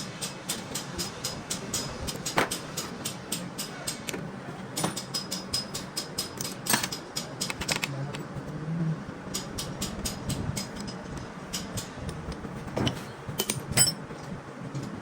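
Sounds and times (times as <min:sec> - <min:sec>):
steady low hum: 0:00.0 - 0:15.0
metallic clicks of hand tools: 0:04.8 - 0:08.0.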